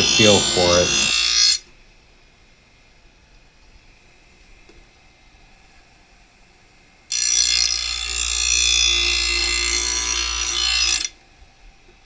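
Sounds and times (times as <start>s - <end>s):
blade grinding on grinding wheel: 0.0s - 1.6s, 7.1s - 11.1s.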